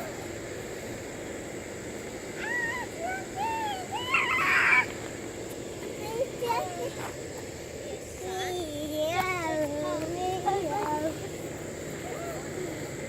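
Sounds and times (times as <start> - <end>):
child squealing and babbling: 2.4 - 4.9.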